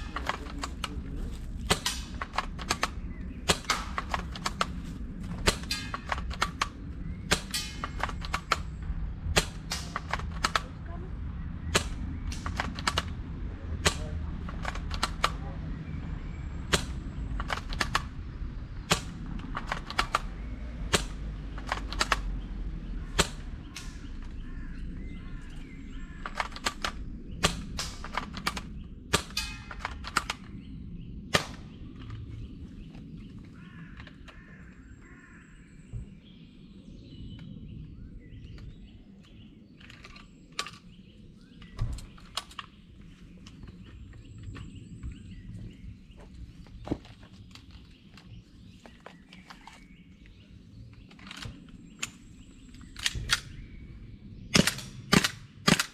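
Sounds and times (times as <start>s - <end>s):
gunshots: 0.0s - 4.8s, 11.7s - 13.2s.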